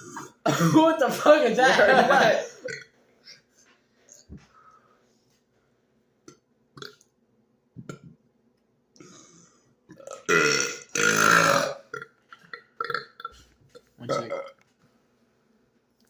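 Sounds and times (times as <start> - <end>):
man burping: 0.0 - 0.8, 2.6 - 2.9, 6.3 - 7.0, 9.9 - 12.1, 12.8 - 13.3, 14.1 - 14.6
faint small noises: 2.6 - 11.0, 11.7 - 16.0.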